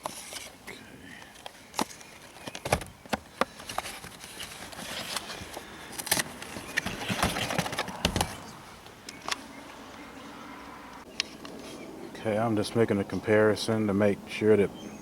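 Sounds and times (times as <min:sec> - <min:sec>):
rustling: 0:00.0 - 0:08.6.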